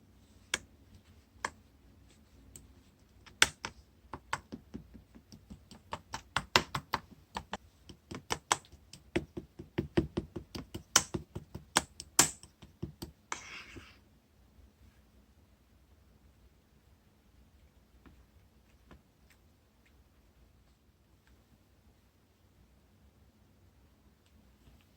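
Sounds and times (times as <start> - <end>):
sharp taps and clicks: 3.3 - 13.2.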